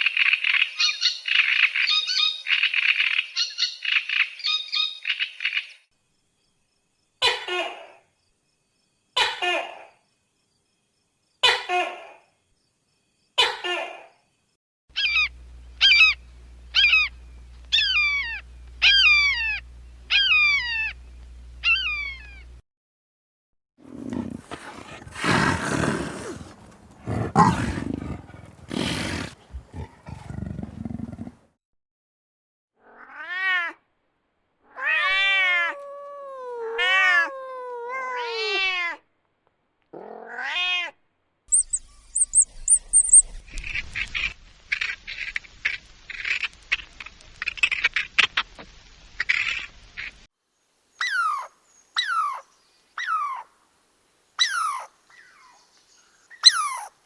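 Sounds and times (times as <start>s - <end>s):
animal growling: 23.8s - 31.4s
long cat-like cries: 34.8s - 38.7s.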